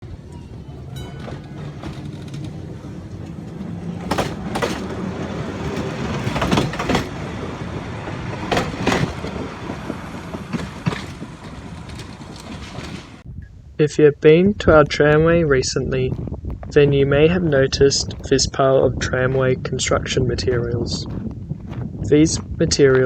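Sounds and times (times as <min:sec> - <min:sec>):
wheels clacking over rail joints: 0:00.0 - 0:13.2
tram rumble: 0:00.0 - 0:13.8, 0:14.6 - 0:23.0.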